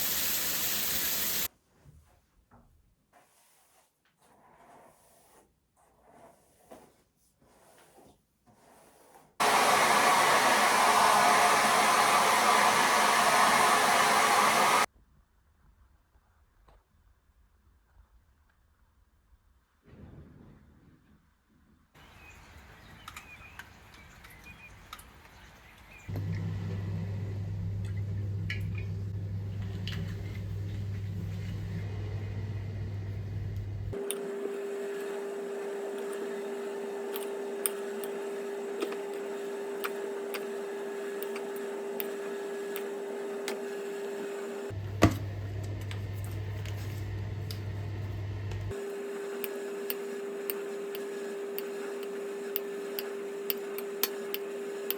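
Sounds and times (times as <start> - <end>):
machine hum: 9.4 - 14.9, 26.1 - 54.9.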